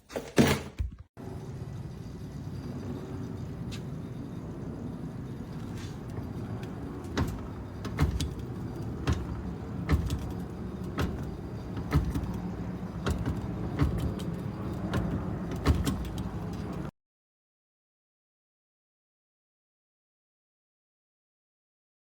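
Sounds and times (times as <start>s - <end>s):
car road rumble: 1.2s - 16.9s
bike rack clunking and rattling: 5.5s - 16.9s.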